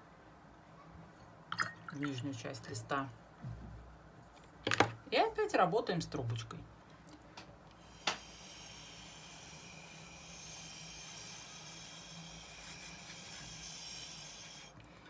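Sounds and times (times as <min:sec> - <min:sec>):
straw blowing air hiss: 0:07.8 - 0:14.8.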